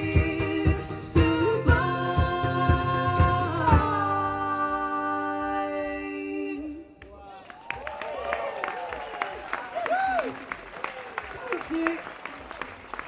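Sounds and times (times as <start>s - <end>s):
live band with singing: 0.0s - 7.0s.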